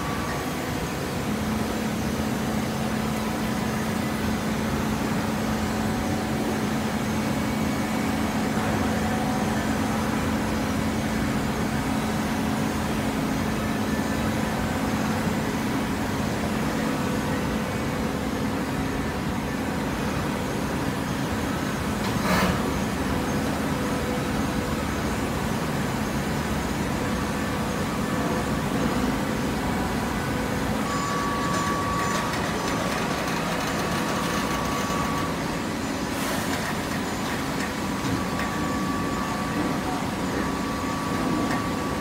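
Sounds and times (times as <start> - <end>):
hydraulic power unit humming: 0.0 - 42.0.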